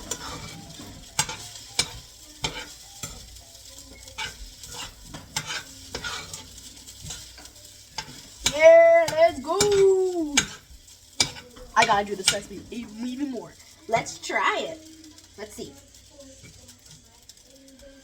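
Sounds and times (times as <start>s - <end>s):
utensil scraping a pan: 0.0s - 14.3s
rice sizzling in a pan: 0.0s - 18.0s.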